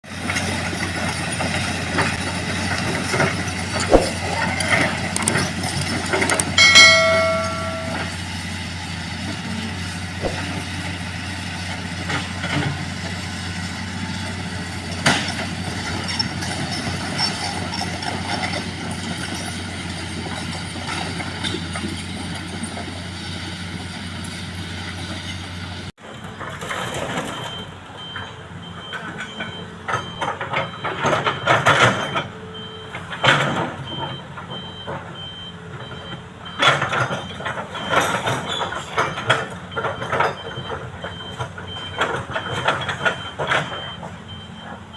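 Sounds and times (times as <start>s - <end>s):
heavy machinery engine running: 0.1s - 44.9s
clanking and knocking: 5.2s - 8.2s
reversing alarm beeping: 6.6s - 8.1s, 27.2s - 44.8s.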